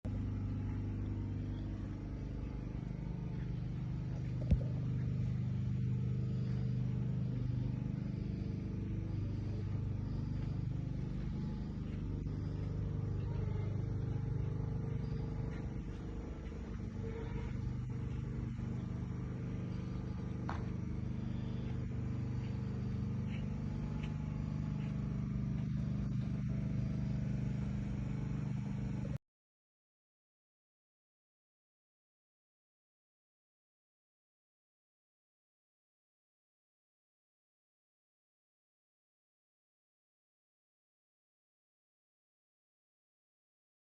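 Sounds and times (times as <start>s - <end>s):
low engine hum: 0.1s - 29.2s.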